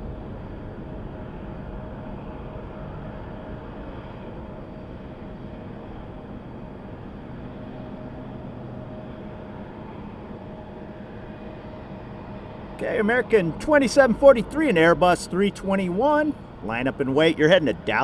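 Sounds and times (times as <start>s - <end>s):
faint steady whine: 0.0s - 18.0s
jet engines rumbling: 9.6s - 18.0s.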